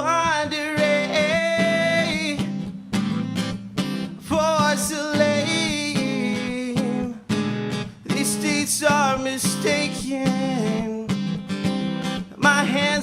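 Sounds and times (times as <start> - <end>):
man singing: 0.0 - 2.6, 4.2 - 7.4, 8.0 - 11.4, 12.2 - 13.0
strummed acoustic guitar: 0.0 - 13.0.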